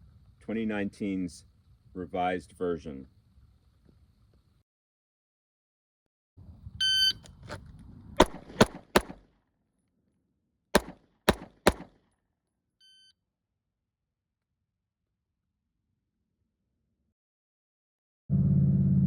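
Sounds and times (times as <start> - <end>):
shot timer beep: 6.8 - 7.3
pistol shots: 8.2 - 9.2, 10.8 - 11.9.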